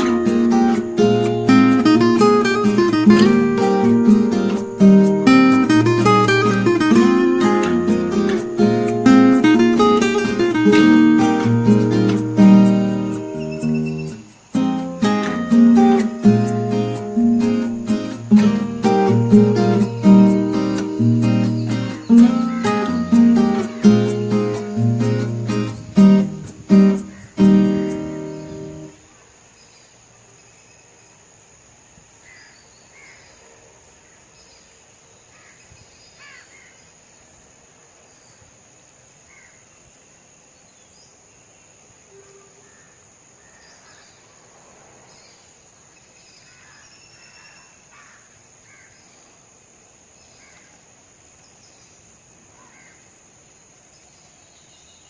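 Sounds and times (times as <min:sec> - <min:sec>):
strummed acoustic guitar: 0:00.0 - 0:29.0
high-pitched insect drone: 0:00.0 - 0:29.1.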